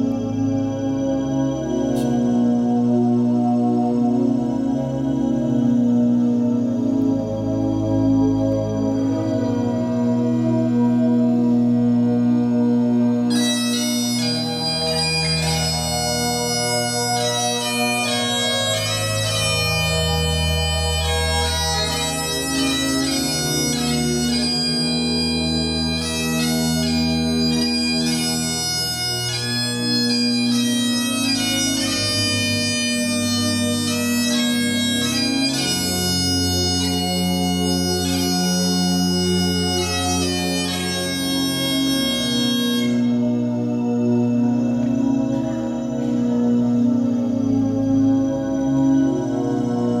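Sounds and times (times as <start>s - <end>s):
bagpipes playing: 8.7s - 44.1s.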